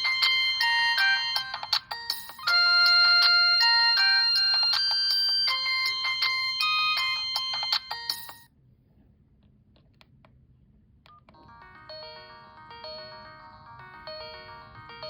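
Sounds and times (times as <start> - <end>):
phone ringtone melody: 0.0 - 8.5, 11.3 - 15.0.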